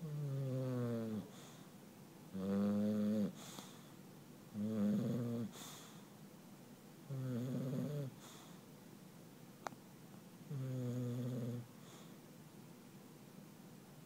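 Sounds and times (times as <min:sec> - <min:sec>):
dog snoring: 0:00.0 - 0:01.6, 0:02.3 - 0:03.9, 0:04.5 - 0:06.0, 0:07.1 - 0:08.6, 0:10.5 - 0:12.1.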